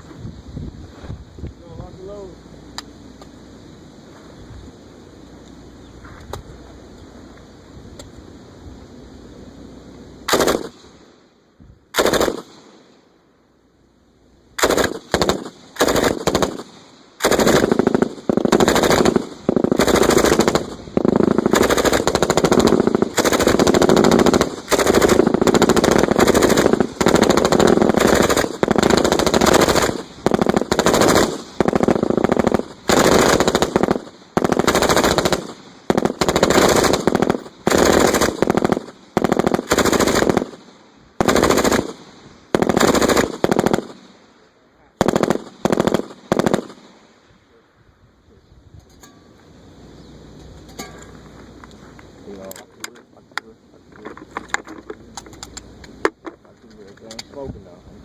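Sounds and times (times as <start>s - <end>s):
machine guns firing automatic bursts: 10.3s - 11.0s, 11.9s - 12.7s, 14.6s - 44.1s, 45.0s - 46.9s
single gunshots: 10.3s - 11.1s, 11.9s - 12.9s, 14.6s - 44.2s.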